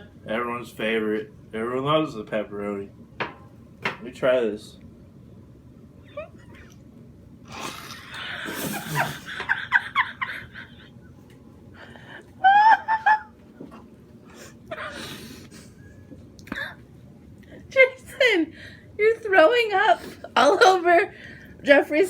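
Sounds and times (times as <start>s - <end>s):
high laugh-like cries: 12.4s - 13.4s.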